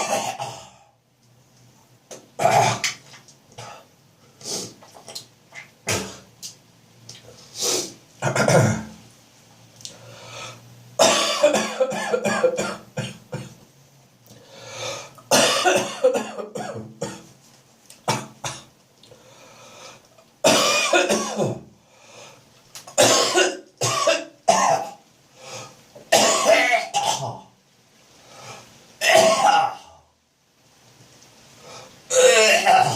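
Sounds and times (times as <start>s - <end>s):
person coughing: 0.0s - 0.8s, 8.2s - 8.9s, 11.0s - 13.5s, 15.3s - 17.2s, 20.5s - 21.6s, 23.0s - 24.9s, 26.1s - 27.4s
person clearing throat: 0.0s - 0.9s, 2.4s - 3.0s, 8.2s - 8.9s, 23.0s - 25.0s, 32.1s - 32.9s.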